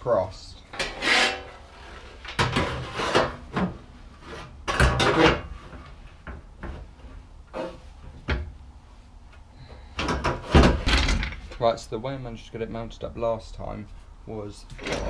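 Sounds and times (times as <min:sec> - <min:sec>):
metal panel clunking and scraping: 0:02.2 - 0:06.8, 0:10.0 - 0:11.6.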